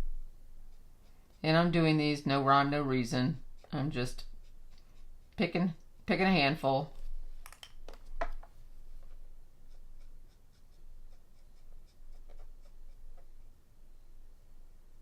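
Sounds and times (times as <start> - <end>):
marker nib scratching on card: 3.3 - 5.5, 9.1 - 13.4.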